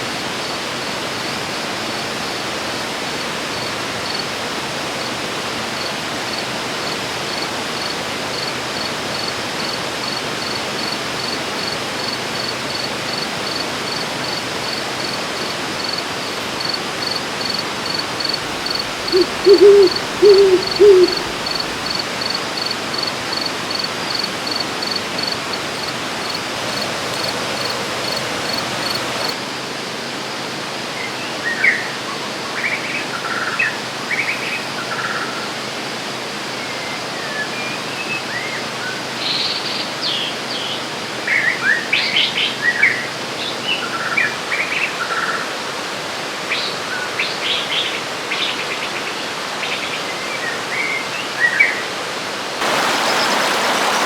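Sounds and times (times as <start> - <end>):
river water flowing: 1.3 - 29.4, 52.3 - 54.0
pulsing insect call: 6.3 - 29.4
birds chirping: 18.2 - 22.2, 52.6 - 54.0.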